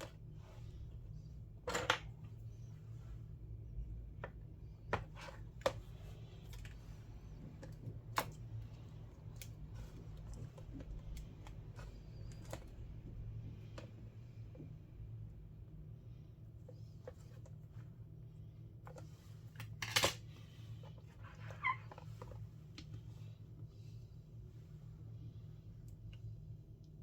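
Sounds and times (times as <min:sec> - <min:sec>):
steady low hum: 0:22.1 - 0:27.0.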